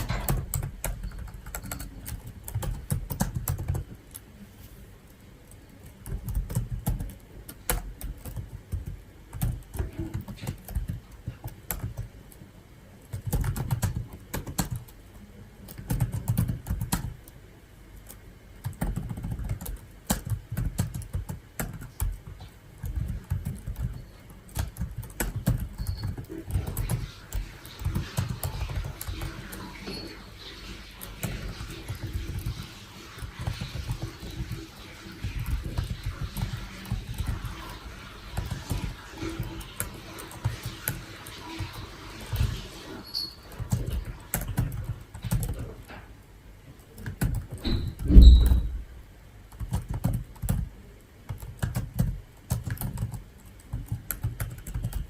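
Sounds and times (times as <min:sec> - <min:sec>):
typing on computer keyboard: 0:00.0 - 0:04.3, 0:05.4 - 0:12.4, 0:13.0 - 0:17.4, 0:18.0 - 0:42.6, 0:43.2 - 0:45.9, 0:46.8 - 0:48.6, 0:49.5 - 0:50.7, 0:51.3 - 0:55.0.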